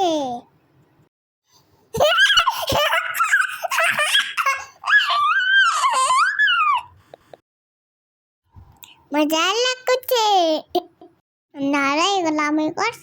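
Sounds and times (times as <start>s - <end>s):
child laughing and squealing: 2.0s - 7.0s.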